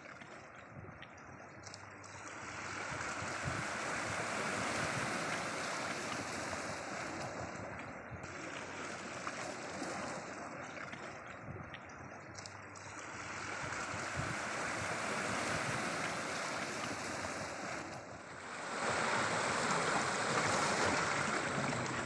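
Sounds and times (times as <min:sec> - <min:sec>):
sea surf rushing: 0:02.4 - 0:10.6, 0:13.1 - 0:22.0.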